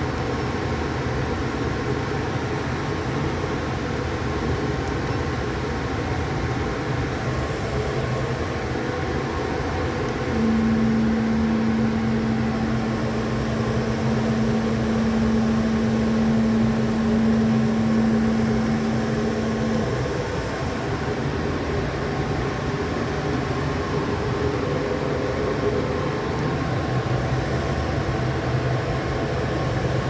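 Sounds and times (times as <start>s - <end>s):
cnc machine mechanical drone: 6.5s - 30.0s
steady humming tone: 6.7s - 30.0s.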